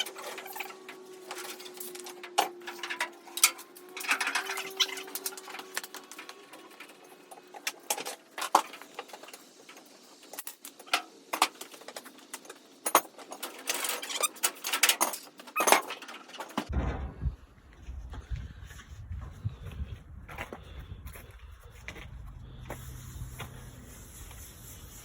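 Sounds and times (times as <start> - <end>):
metal tools clinking and rattling: 0.0 - 16.7
steady low rumble: 16.7 - 24.4.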